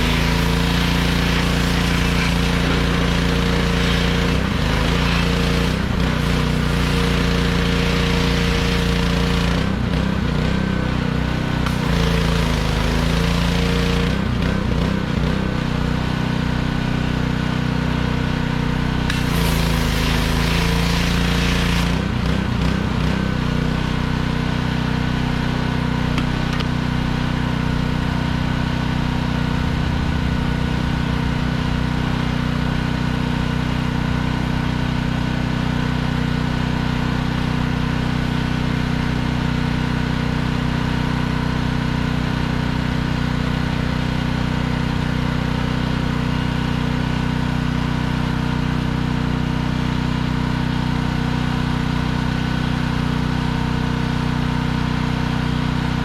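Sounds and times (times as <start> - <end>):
hissing rush: 0.0 - 9.3, 28.2 - 33.5
small gasoline engine running: 0.0 - 56.0.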